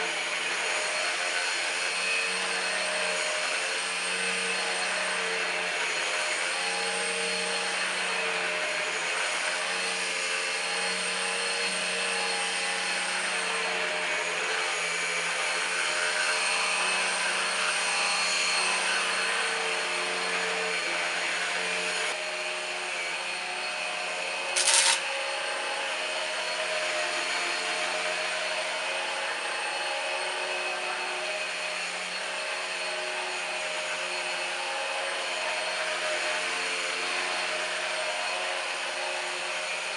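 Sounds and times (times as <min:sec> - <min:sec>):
stick vacuum running: 0:24.6 - 0:25.2.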